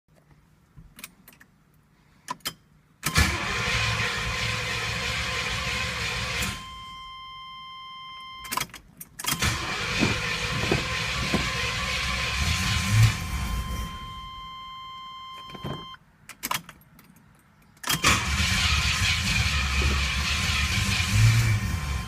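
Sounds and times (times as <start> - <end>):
car starter cranking: 2.4 - 6.6, 8.4 - 14.3, 17.8 - 22.0.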